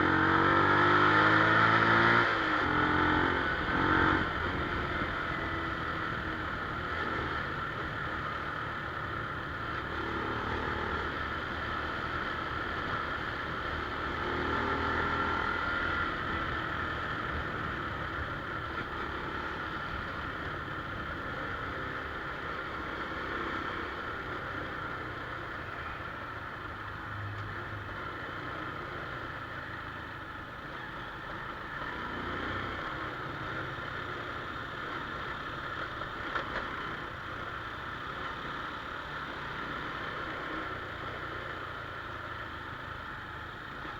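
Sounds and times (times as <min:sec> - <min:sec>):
small motorcycle engine running: 0:00.0 - 0:27.0.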